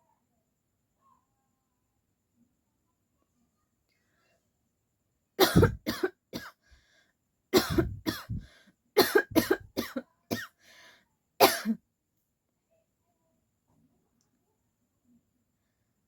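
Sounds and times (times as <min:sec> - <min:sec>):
woman coughing: 0:05.4 - 0:06.5, 0:07.6 - 0:10.5, 0:11.4 - 0:11.8.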